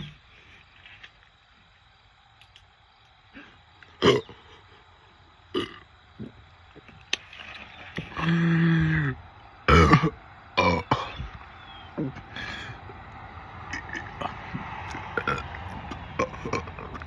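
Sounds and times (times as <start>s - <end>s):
man's stifled throat sounds: 0.0s - 0.3s, 3.4s - 4.7s, 8.0s - 11.4s, 13.7s - 17.0s.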